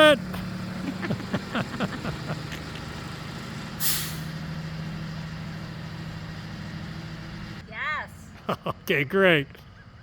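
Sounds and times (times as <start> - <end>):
truck engine running: 0.0 - 7.6
air brake hiss: 3.8 - 4.3.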